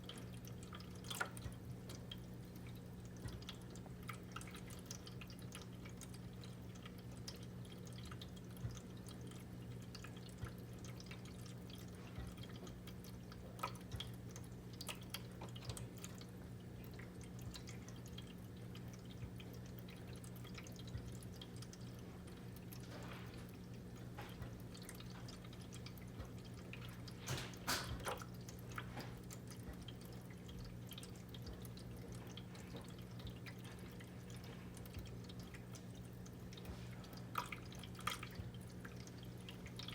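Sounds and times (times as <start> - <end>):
electric pump humming: 0.0 - 39.9
water trickling and dripping: 0.0 - 39.9.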